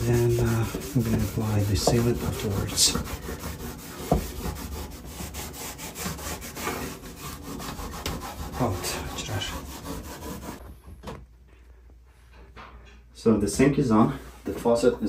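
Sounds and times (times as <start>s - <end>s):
scraping strokes on countertop: 0.0s - 10.6s.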